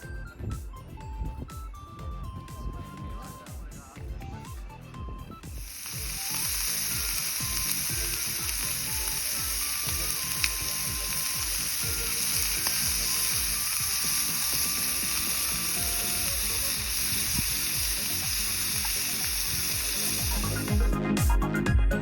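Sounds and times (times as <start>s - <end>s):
sizzling hiss: 5.5s - 21.0s.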